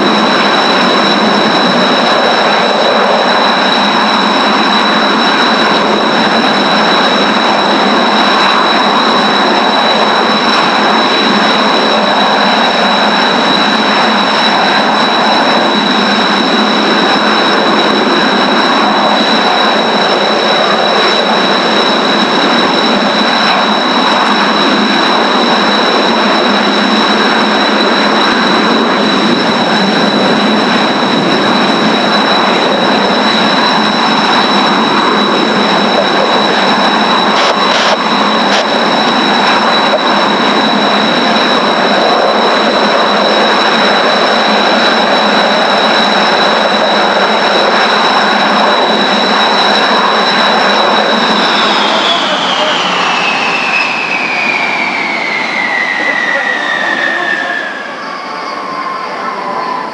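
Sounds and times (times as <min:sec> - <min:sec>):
jet engines idling whine: 0:00.0 - 0:59.9
loud rush of noise: 0:00.0 - 0:59.9.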